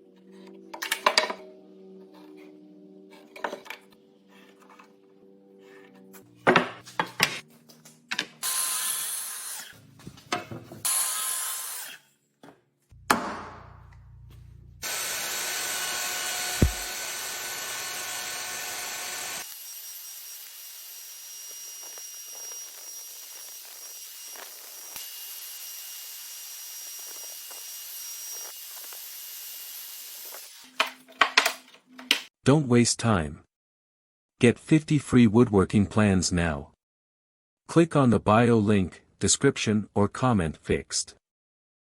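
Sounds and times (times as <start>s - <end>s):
sawing: 8.4s - 9.8s, 10.8s - 12.1s, 14.8s - 30.8s
power tool running: 14.8s - 30.6s.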